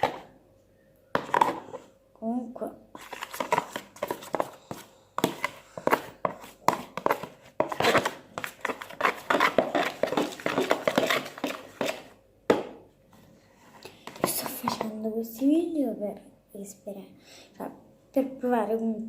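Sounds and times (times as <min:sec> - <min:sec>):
spatula stirring slime in bowl: 0:02.9 - 0:12.2, 0:14.0 - 0:15.0.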